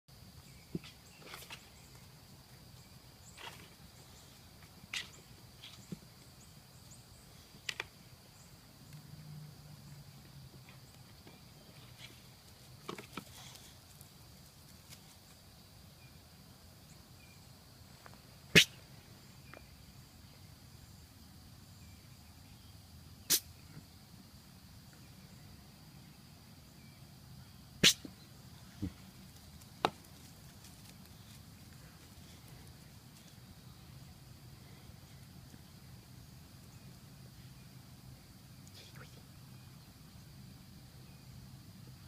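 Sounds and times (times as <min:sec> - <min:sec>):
pet sneezing: 0:27.8 - 0:28.1.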